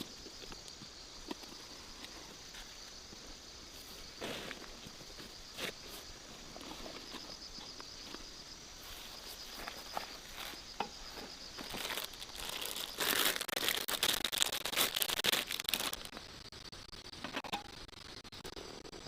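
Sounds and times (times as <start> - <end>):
insects chirring: 0.0 - 19.0
crinkling and rustling: 3.8 - 16.2.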